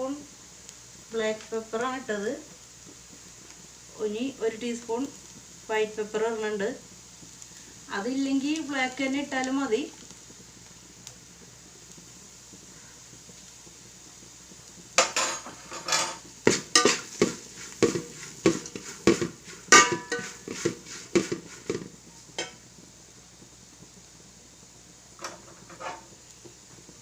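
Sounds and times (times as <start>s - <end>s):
spatula scraping frying pan: 15.0s - 22.6s, 25.2s - 26.2s.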